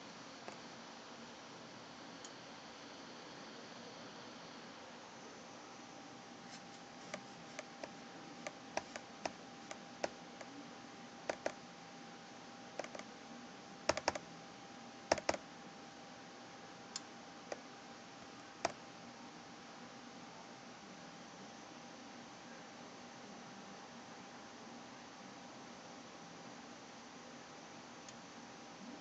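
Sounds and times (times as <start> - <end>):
faint steady hum: 0.0 - 29.0
finger tapping laptop touchpad: 8.8 - 10.2, 11.3 - 11.6, 12.8 - 13.0, 13.9 - 14.2, 15.1 - 15.4.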